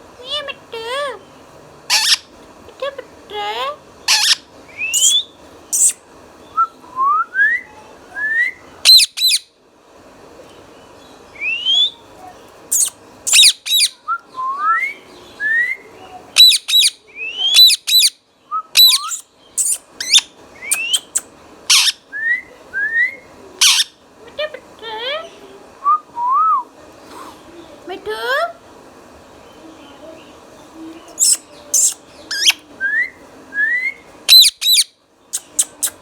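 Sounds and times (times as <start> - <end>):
parakeet screeching and whistling: 1.9 - 2.3, 4.1 - 6.0, 8.8 - 9.4, 12.7 - 14.0, 16.4 - 18.2, 18.8 - 22.0, 23.6 - 23.9, 31.2 - 32.6, 34.3 - 36.0.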